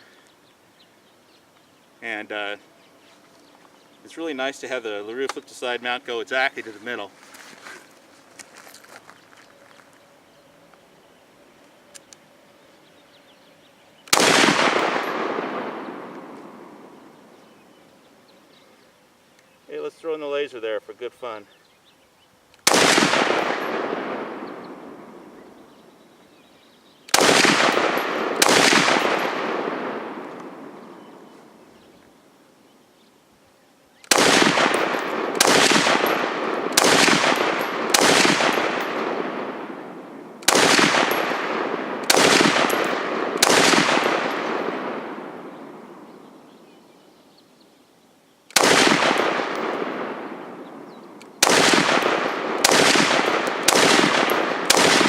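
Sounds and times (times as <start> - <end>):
rifle shots echoing: 14.0 - 17.4, 22.6 - 25.8, 27.1 - 31.6, 34.0 - 46.5, 48.5 - 55.0.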